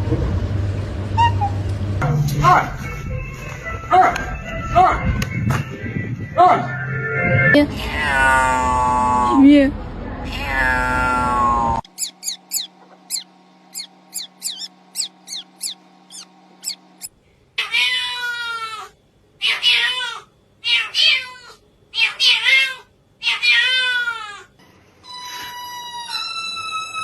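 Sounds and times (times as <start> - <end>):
cat meowing: 10.3 - 13.2, 17.6 - 24.4
high falling chirps: 11.8 - 17.1.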